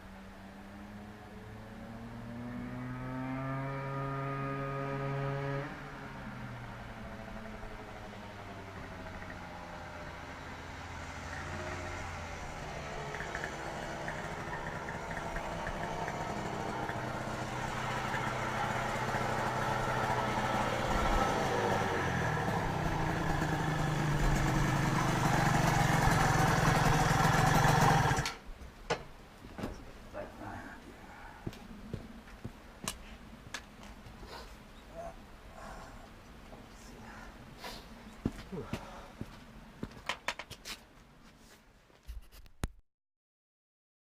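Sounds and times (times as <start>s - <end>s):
two-stroke motorcycle engine revving: 1.9s - 6.0s, 7.0s - 28.3s.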